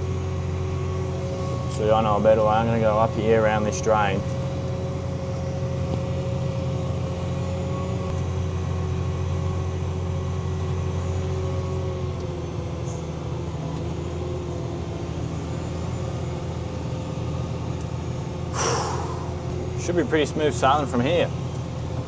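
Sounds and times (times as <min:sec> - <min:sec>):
tractor diesel engine droning: 0:18.2 - 0:22.0.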